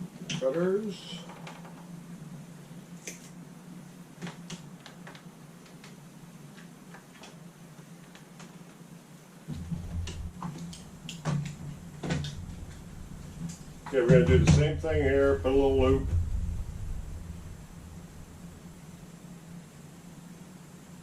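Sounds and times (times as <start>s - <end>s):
steady low hum: 0.0s - 21.0s
handling bumps and rumbling: 9.4s - 19.6s.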